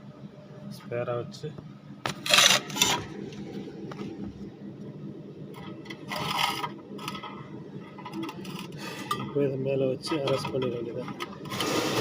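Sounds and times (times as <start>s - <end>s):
low mechanical hum: 0.0s - 12.0s
metal parts scraping: 2.2s - 3.1s, 5.9s - 9.4s.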